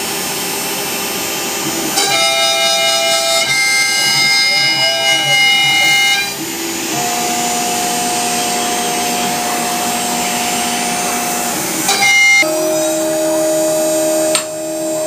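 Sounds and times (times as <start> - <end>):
cnc router whining: 0.0 - 15.0.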